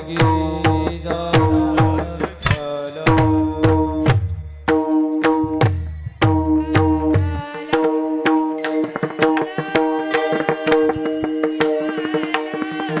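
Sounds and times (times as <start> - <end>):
hand drum strokes: 0.0 - 13.0.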